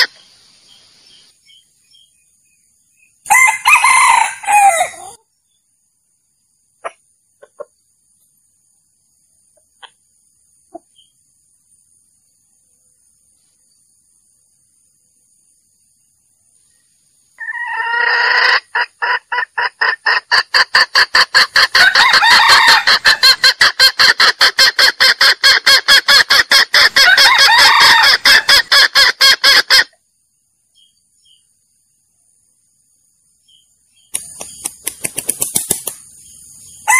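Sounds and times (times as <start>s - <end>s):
junglefowl clucking: 0.0s - 0.2s, 6.8s - 7.8s, 17.4s - 30.0s.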